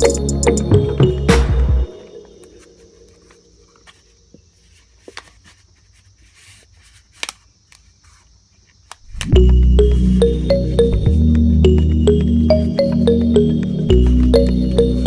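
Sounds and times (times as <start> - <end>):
background music: 0.0 - 3.1, 9.2 - 15.0.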